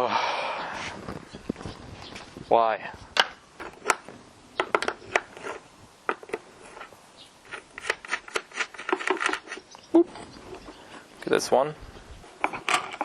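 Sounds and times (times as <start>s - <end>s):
plastic parts clicking: 3.2s - 6.9s, 7.5s - 9.6s, 12.4s - 13.0s.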